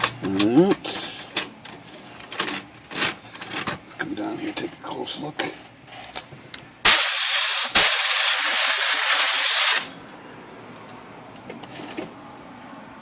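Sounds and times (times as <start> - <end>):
air blow gun hissing: 6.9 - 9.9.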